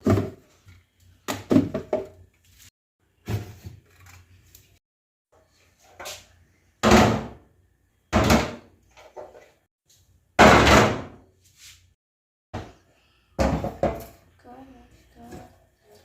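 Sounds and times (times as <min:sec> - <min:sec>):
refrigerator clunks and knocks: 0:06.8 - 0:07.4, 0:08.1 - 0:08.7, 0:10.4 - 0:11.2, 0:13.4 - 0:14.0.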